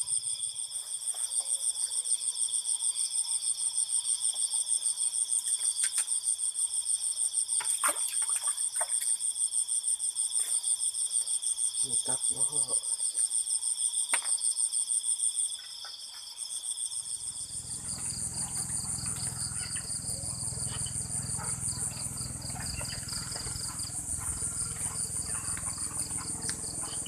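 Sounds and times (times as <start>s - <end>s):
night insects chirping: 0.0s - 27.0s
low steady rumble: 17.2s - 27.0s.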